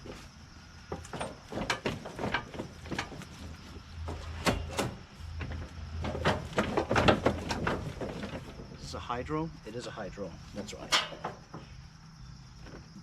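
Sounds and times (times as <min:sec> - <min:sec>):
metal and plastic parts rattling: 0:00.9 - 0:08.9, 0:10.8 - 0:11.7.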